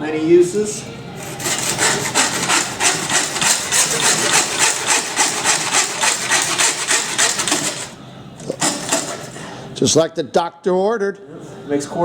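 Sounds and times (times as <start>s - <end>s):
hacksaw sawing through meat: 1.2s - 8.0s, 8.6s - 9.3s.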